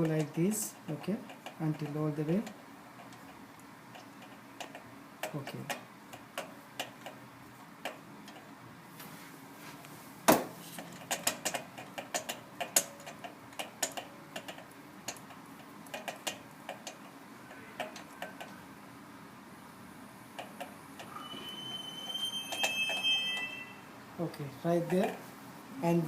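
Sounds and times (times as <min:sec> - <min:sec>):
ratchet wrench clicking: 0:11.0 - 0:17.1.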